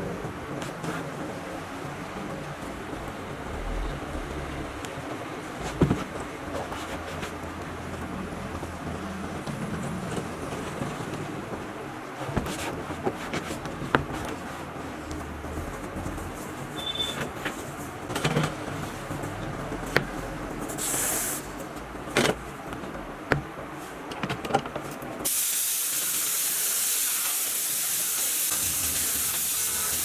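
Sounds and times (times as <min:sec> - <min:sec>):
spray gun hissing: 0:25.3 - 0:30.0.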